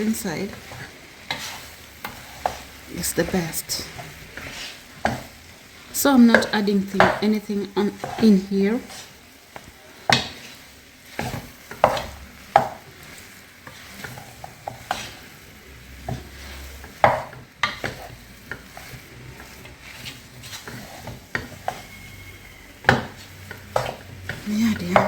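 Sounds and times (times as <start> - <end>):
spoon scraping food in a pan: 0.4 - 25.0
spoon knocking against pan: 11.2 - 12.8, 22.8 - 25.0.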